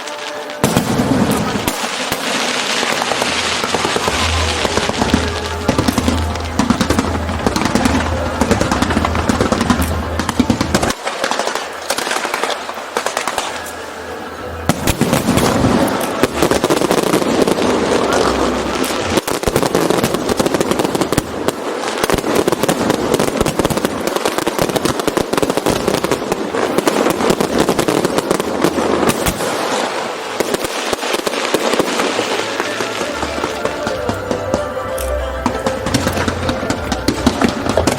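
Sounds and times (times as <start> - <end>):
fireworks crackling and popping: 0.0 - 37.9.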